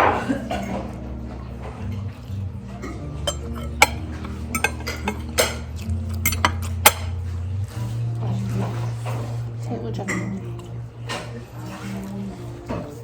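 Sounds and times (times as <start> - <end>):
cutlery clinking against dishes: 2.7 - 7.3.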